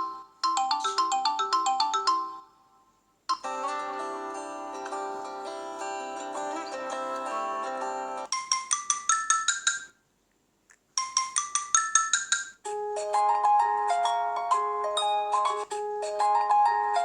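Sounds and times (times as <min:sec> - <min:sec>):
bright chime-like ringtone: 0:00.0 - 0:02.6, 0:05.9 - 0:10.0, 0:11.0 - 0:17.0
marimba-like ringtone melody: 0:00.0 - 0:02.6, 0:03.3 - 0:10.0, 0:11.0 - 0:17.0.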